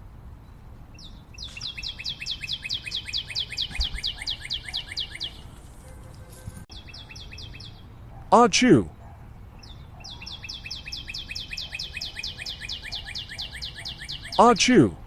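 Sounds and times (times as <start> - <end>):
bird trilling chirps: 1.0 - 5.6, 6.7 - 7.9, 9.6 - 14.6.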